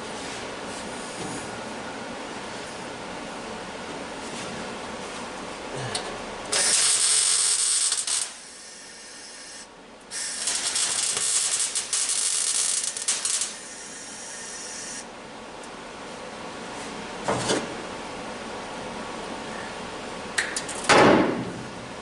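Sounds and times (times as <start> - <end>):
welding on sheet steel: 6.5 - 15.0.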